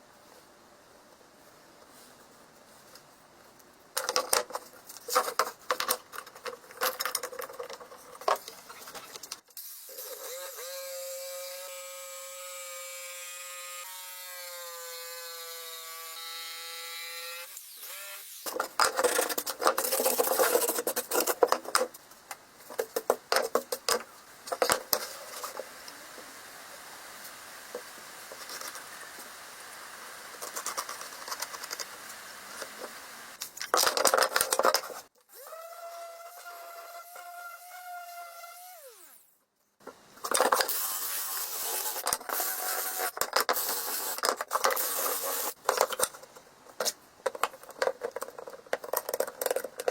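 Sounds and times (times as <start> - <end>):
whirring power tool: 9.6 - 18.5, 35.3 - 39.3, 40.7 - 44.2.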